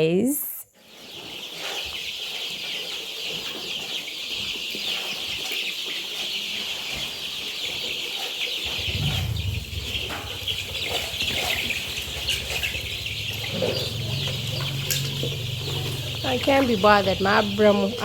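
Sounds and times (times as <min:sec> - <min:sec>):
young chickens peeping and clucking: 0:00.2 - 0:18.0
low rumble: 0:08.6 - 0:17.6.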